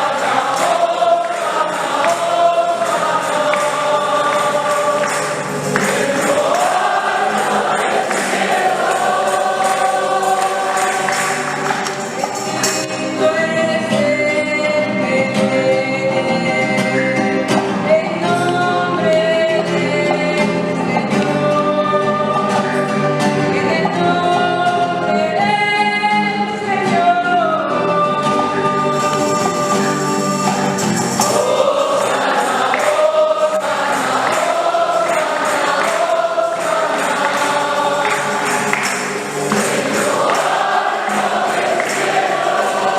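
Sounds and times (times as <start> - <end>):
light percussion: 0.0 - 14.2, 28.9 - 42.9
church choir singing a hymn: 0.0 - 42.9.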